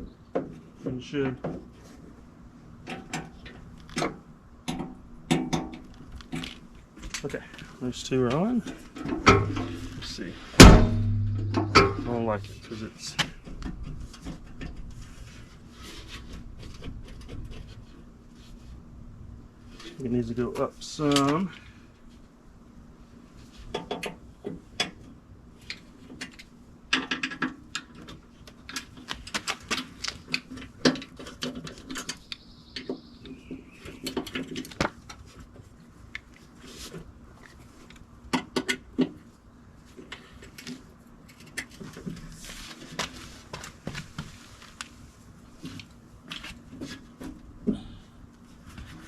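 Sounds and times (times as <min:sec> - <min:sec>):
faint low hum: 0:07.1 - 0:15.5.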